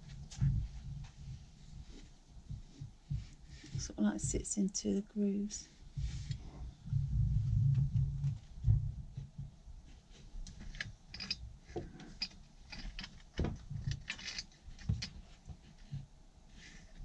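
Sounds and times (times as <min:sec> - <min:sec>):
metallic clinks and scrapes: 0:10.6 - 0:13.2, 0:13.8 - 0:15.1.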